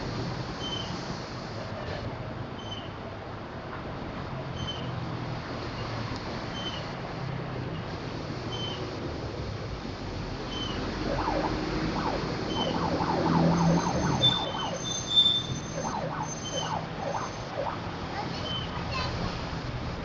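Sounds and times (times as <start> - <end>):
bus engine noise: 0.0 - 20.0
multi-tone air horn whoops: 11.0 - 17.7.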